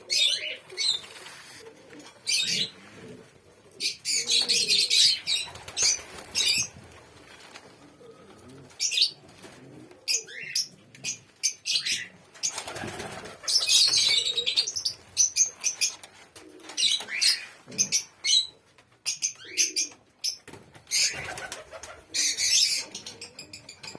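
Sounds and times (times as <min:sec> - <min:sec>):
doves cooing: 0:00.0 - 0:20.2, 0:20.8 - 0:23.9
doves flapping wings: 0:04.4 - 0:09.8, 0:12.4 - 0:15.0, 0:20.5 - 0:22.2.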